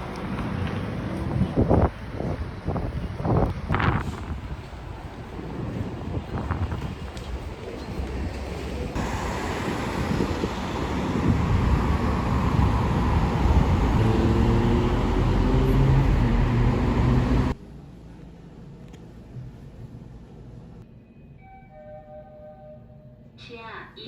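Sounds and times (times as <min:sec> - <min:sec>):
rushing vehicle noise: 0:00.0 - 0:17.6.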